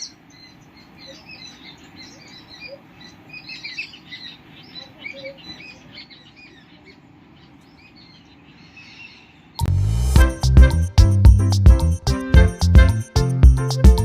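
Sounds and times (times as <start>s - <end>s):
small birds chirping: 0.0s - 9.7s
loud music: 9.6s - 14.0s.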